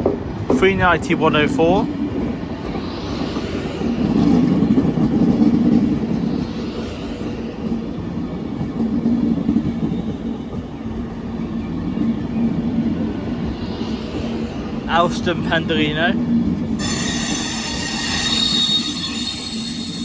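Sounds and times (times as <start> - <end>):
train wheels on rail: 0.0 - 20.0.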